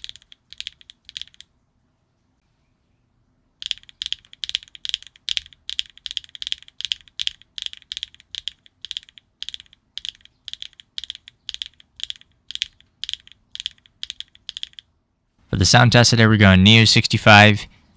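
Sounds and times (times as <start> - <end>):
mechanical keyboard switches clacking: 0.0 - 1.4, 3.6 - 14.8.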